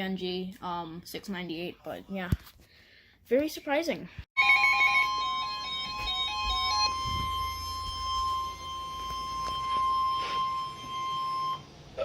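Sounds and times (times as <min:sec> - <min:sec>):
electronic beeping alert melody: 0:04.4 - 0:11.7
steady high alert tone: 0:04.4 - 0:11.7.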